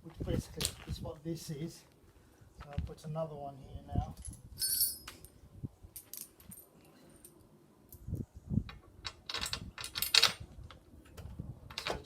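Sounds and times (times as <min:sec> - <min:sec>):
metal parts clinking: 0:04.2 - 0:05.3, 0:09.0 - 0:10.4.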